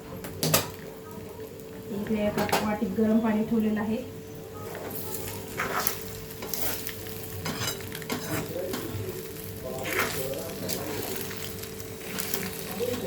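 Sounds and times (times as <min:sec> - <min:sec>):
food sizzling: 0:00.2 - 0:13.0
spatula scraping a pan: 0:04.6 - 0:13.0.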